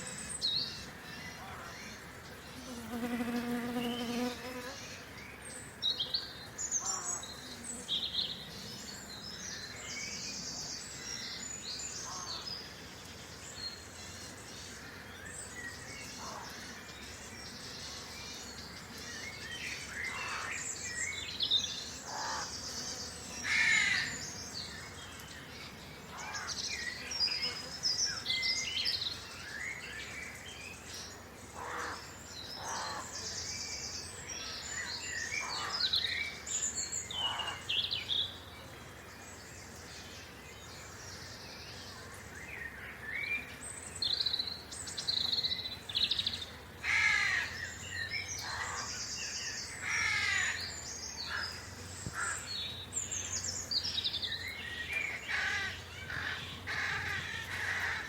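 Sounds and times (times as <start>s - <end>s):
insects buzzing: 0.0s - 58.0s
birds chirping and singing: 39.4s - 58.0s.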